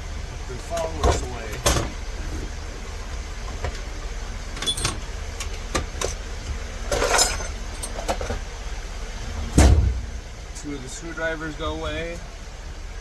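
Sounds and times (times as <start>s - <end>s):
steady low hum: 0.0s - 13.0s
tools clicking and clattering: 4.6s - 5.0s, 6.9s - 8.4s.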